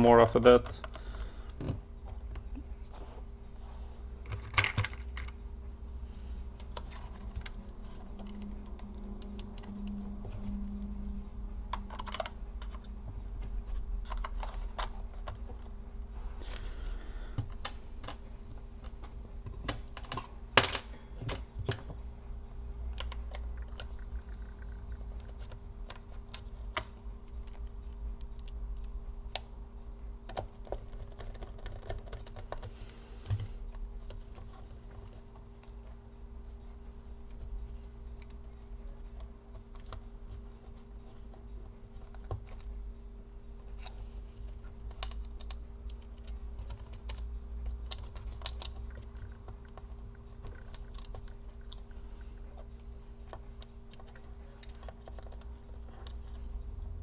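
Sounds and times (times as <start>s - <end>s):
faint steady hum: 0.0s - 57.0s
laptop parts clicking and tapping: 11.7s - 13.2s, 30.2s - 35.8s, 44.7s - 51.8s.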